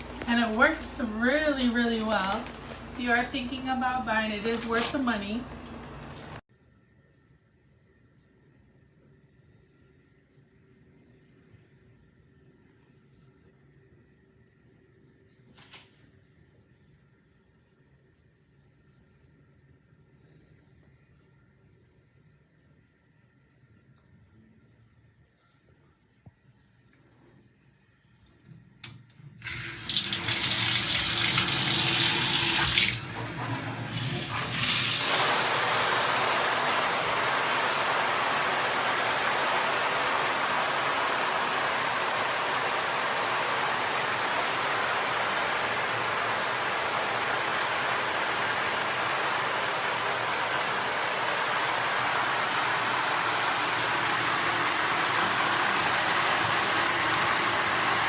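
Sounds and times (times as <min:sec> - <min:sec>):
shower head spraying water: 0:29.4 - 0:58.0.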